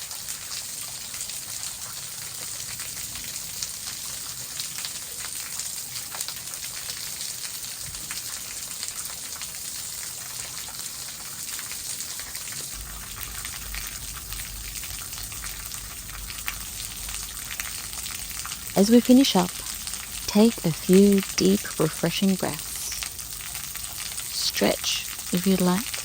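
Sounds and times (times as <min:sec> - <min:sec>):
low rumble: 0:12.7 - 0:18.8, 0:19.5 - 0:20.3
waterfall rushing: 0:12.7 - 0:23.2.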